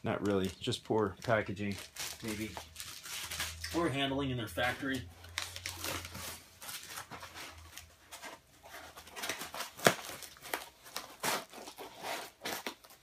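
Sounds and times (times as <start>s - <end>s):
packaging rustling and crinkling: 0.0s - 13.0s.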